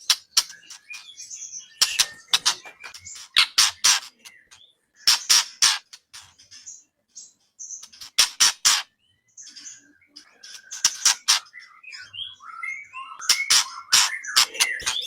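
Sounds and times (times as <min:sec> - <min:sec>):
bird chirps and whistled notes: 0:00.0 - 0:05.8, 0:07.2 - 0:15.0
loud harsh bird strokes: 0:00.0 - 0:06.4, 0:07.8 - 0:09.0, 0:10.4 - 0:11.8, 0:13.2 - 0:15.0.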